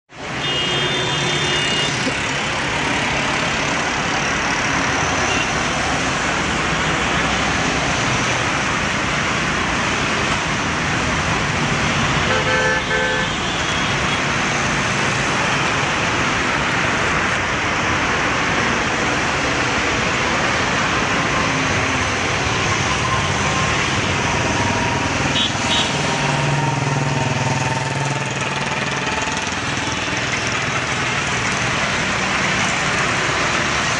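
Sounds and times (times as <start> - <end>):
road traffic noise: 0.0 - 33.9
car horn toots: 12.3 - 13.8.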